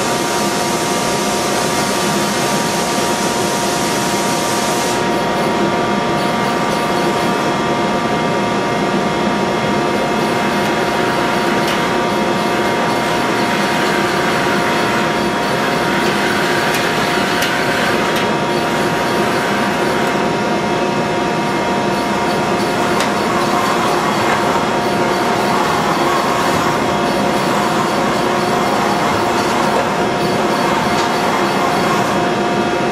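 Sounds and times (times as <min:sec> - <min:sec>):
machining centre whining: 0:00.0 - 0:32.9
sharp machine clicks: 0:10.2 - 0:20.2, 0:21.9 - 0:32.1.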